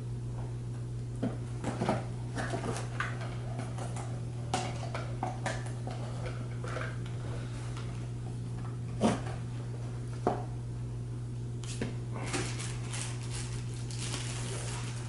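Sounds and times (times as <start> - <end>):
packaging rustling and crinkling: 11.7 - 15.0.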